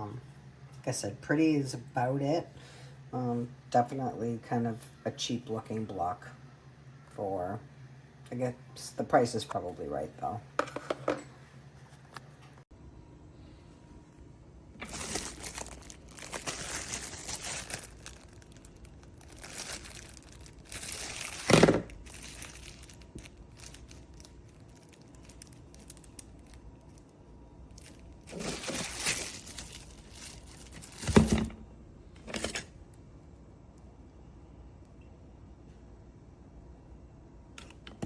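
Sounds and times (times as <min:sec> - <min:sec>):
rustling crinkling handling noise: 0:14.8 - 0:31.4.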